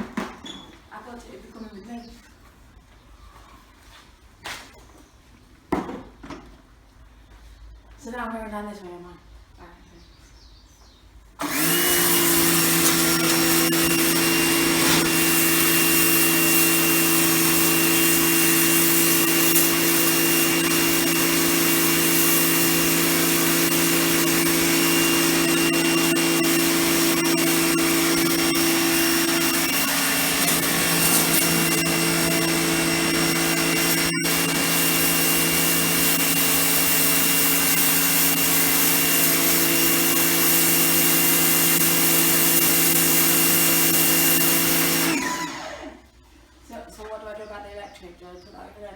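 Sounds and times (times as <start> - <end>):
pressure washer running: 11.4 - 46.1.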